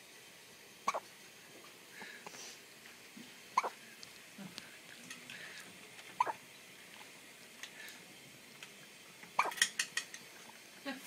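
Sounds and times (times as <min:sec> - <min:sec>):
baby hiccuping: 0:03.6 - 0:03.8, 0:06.2 - 0:06.4.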